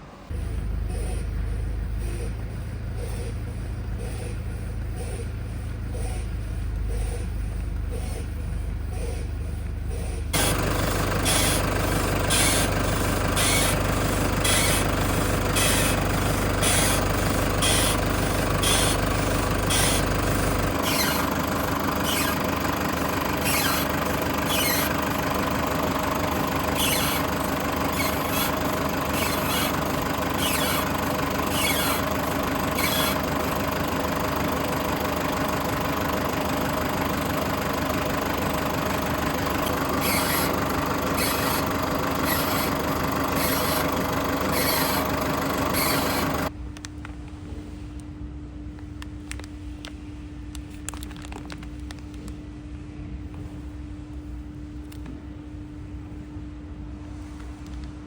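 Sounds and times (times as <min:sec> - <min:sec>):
van engine idling: 0:00.2 - 0:46.5.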